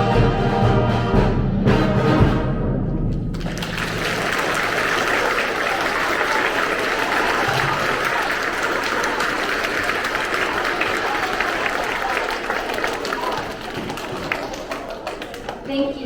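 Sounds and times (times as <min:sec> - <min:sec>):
low orchestral notes: 0:00.0 - 0:04.7
large audience applauding: 0:03.3 - 0:15.9.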